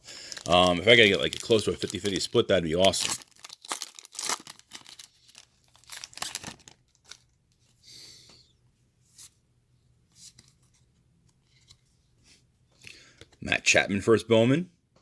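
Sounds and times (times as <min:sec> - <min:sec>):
foil wrapper tearing and crinkling: 0:00.0 - 0:07.2
cards clicking and rustling: 0:00.2 - 0:05.1.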